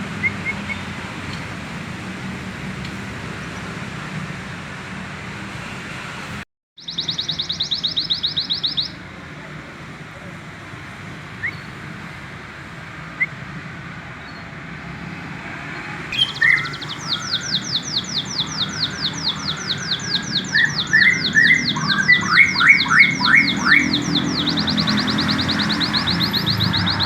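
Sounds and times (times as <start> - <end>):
canary singing trills: 0.0 - 2.4, 6.8 - 9.6, 11.4 - 11.9, 16.1 - 27.0.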